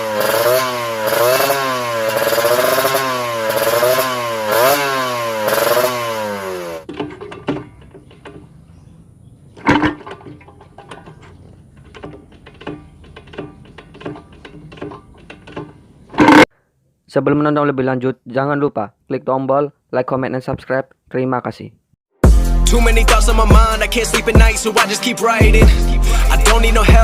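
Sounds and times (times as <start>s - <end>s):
two-stroke engine revving: 0.0s - 7.4s.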